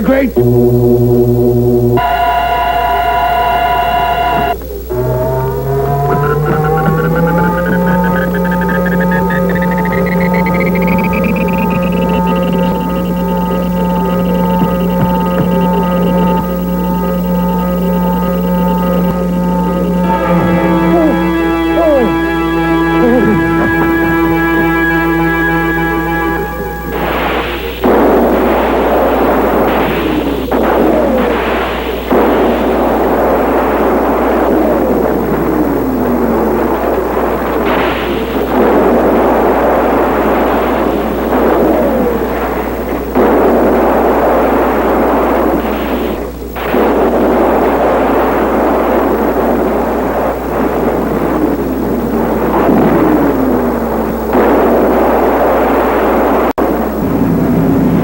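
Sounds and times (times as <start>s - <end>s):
falling whistling tones: 2.2s - 27.9s
rushing explosive roar: 4.4s - 58.0s.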